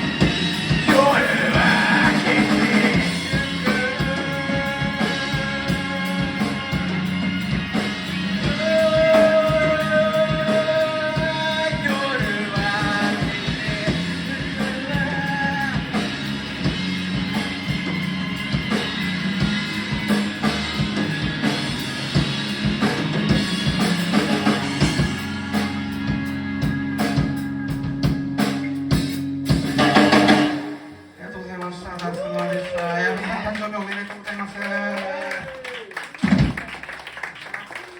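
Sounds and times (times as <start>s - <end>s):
rock band playing: 0.0s - 37.9s
person singing long notes: 0.9s - 15.9s.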